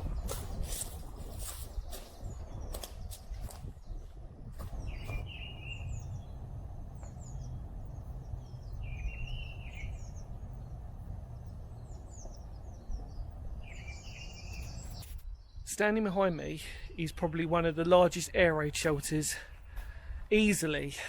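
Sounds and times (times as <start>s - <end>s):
high bird chirps: 0.0s - 16.4s
songbirds calling: 0.0s - 21.0s
steady low rumble: 0.0s - 21.0s.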